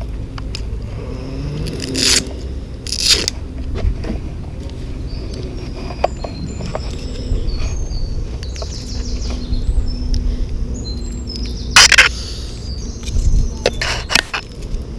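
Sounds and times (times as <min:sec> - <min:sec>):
steady low rumble: 0:00.0 - 0:14.9
small birds chirping: 0:04.4 - 0:14.8.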